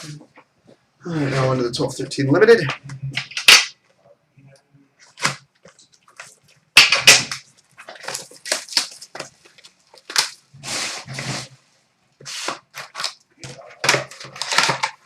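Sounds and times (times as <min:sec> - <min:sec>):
wrapper crackling and rustling: 0:05.0 - 0:11.3, 0:12.2 - 0:15.0.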